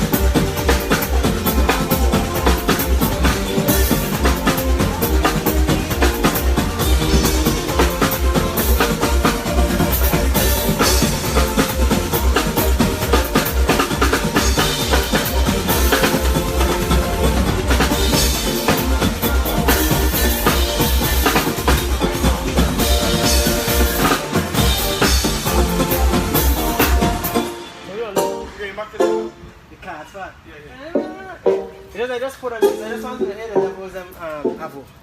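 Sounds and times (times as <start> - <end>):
live band playing: 0.0 - 29.8, 30.7 - 35.0.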